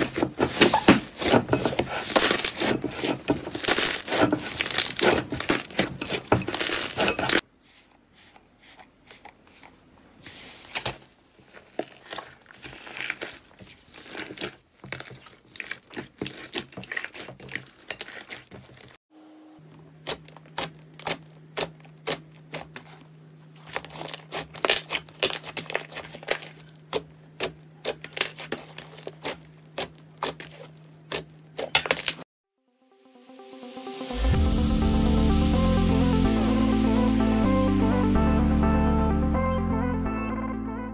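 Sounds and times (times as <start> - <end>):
slime crackling and popping: 3.6 - 5.8, 23.7 - 32.2.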